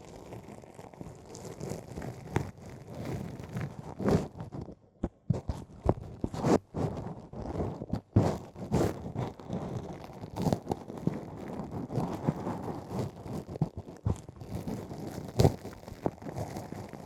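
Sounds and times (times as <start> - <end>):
tool scraping inside ear microphone: 3.8 - 9.4.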